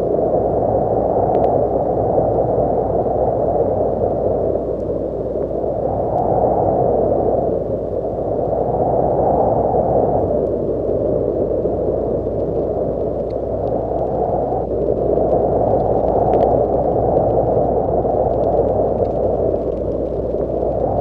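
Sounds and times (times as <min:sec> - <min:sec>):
wind blowing: 0:00.0 - 0:21.0
faint ticks: 0:01.2 - 0:01.6, 0:04.7 - 0:05.5, 0:10.3 - 0:11.3, 0:12.1 - 0:21.0.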